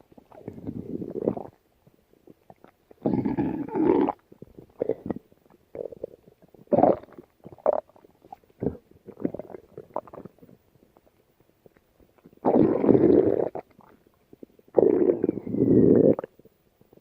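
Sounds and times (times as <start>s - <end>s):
stomach growling and gurgling: 0.0s - 17.0s.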